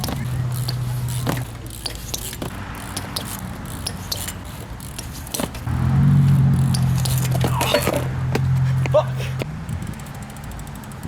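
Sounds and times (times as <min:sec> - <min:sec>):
light clicks and scrapes: 0:00.0 - 0:05.7
vehicle engine hum: 0:00.0 - 0:11.0.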